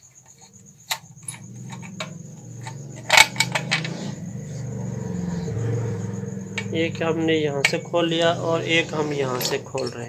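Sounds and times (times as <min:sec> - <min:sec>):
steady low hum: 0:00.2 - 0:10.0
metal tool clicks and clinks: 0:00.9 - 0:04.0, 0:07.6 - 0:07.9, 0:09.2 - 0:10.0.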